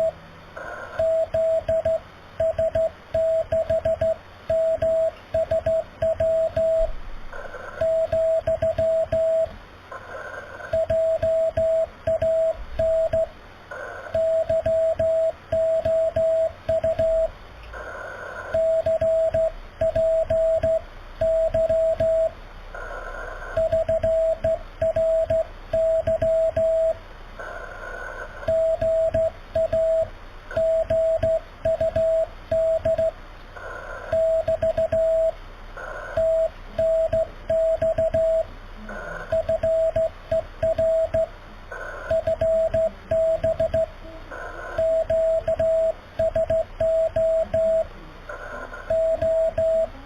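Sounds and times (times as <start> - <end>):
receiver hiss: 0.0 - 50.0
morse code tone: 1.0 - 6.9, 7.8 - 9.5, 10.7 - 13.3, 14.1 - 17.3, 18.5 - 22.3, 23.6 - 27.0, 28.5 - 33.1, 34.1 - 35.4, 36.2 - 38.5, 39.2 - 41.3, 42.1 - 43.9, 44.7 - 47.9, 48.8 - 50.0.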